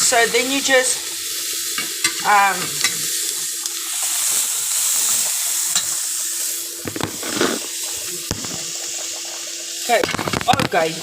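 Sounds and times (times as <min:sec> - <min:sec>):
vegetables sizzling in a pan: 0:00.0 - 0:11.0.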